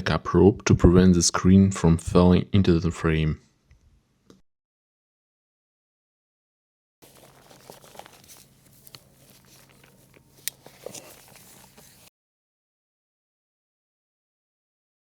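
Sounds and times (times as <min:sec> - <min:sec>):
faint rustling and crinkling: 0:07.0 - 0:12.1
low steady hum: 0:07.0 - 0:12.1.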